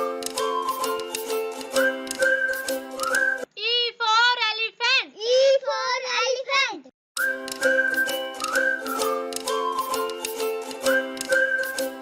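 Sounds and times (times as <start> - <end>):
whistled children's music: 0.0 - 3.5, 7.2 - 12.0.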